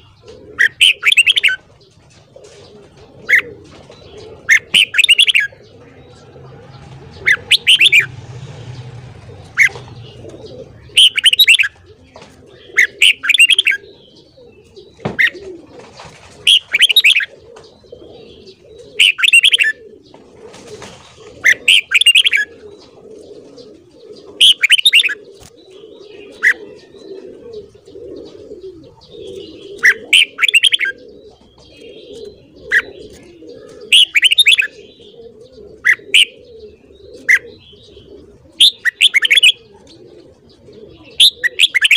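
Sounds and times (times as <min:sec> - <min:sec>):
bulbul singing: 0:00.0 - 0:02.0, 0:02.8 - 0:15.6, 0:16.5 - 0:20.2, 0:21.4 - 0:41.9
faint low murmur: 0:05.4 - 0:11.2.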